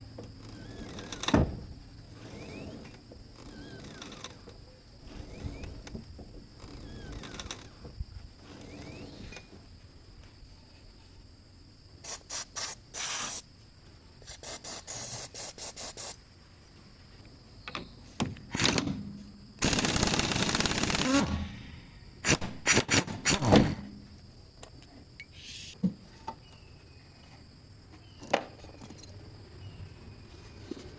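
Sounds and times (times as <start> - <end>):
faint squeaks: 6.5 - 9.6
hissing spray bursts: 12.0 - 13.5, 14.2 - 16.2.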